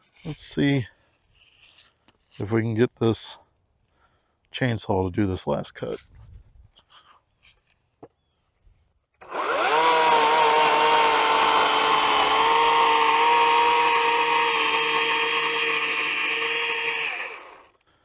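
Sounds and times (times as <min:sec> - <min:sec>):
electric chainsaw cutting log: 0:09.2 - 0:17.8.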